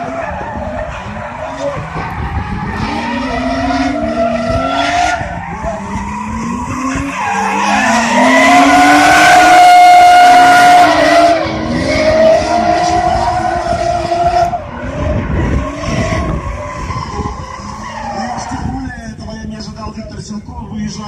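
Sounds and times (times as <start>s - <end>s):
car engine revving: 0.0s - 19.1s.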